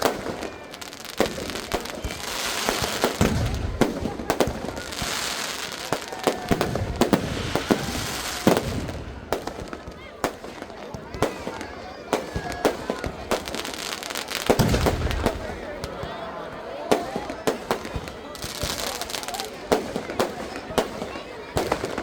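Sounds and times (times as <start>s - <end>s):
firecracker bangs: 0.0s - 11.6s, 12.2s - 15.9s
deep firework boom: 14.5s - 15.5s.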